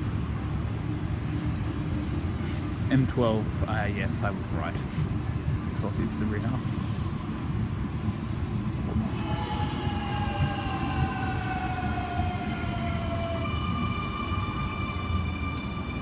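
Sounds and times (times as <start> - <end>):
train wheels rumbling on track: 0.0 - 16.0
traction motor whine: 8.9 - 16.0.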